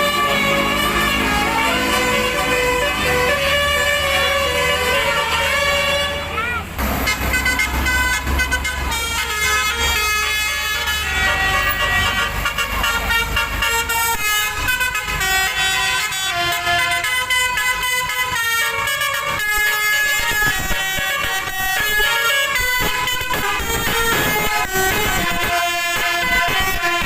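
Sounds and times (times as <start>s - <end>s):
bus engine rumbling: 0.0s - 27.0s
musical air horn melody: 0.0s - 27.0s.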